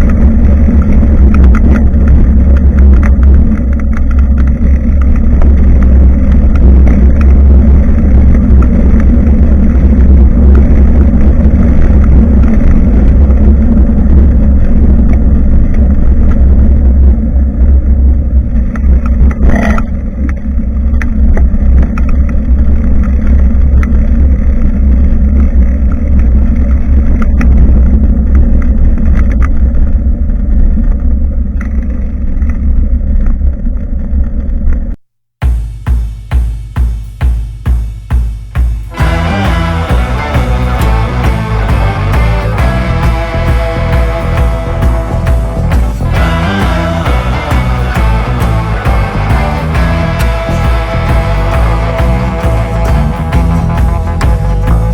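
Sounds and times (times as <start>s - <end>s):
road rumble: 0.0s - 36.0s, 37.2s - 54.9s
sharp knock: 35.4s - 39.6s.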